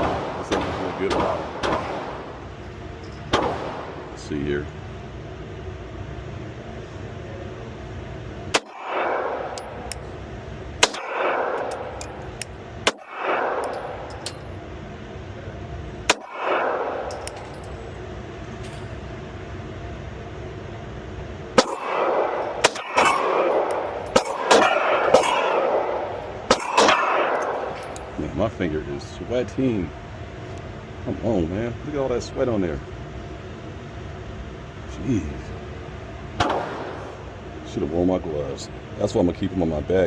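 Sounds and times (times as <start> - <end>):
pistol shots with echoing ring: 0.0 - 2.4, 3.3 - 4.0, 8.5 - 10.0, 10.8 - 14.5, 16.1 - 17.8, 21.6 - 28.2, 36.4 - 37.1.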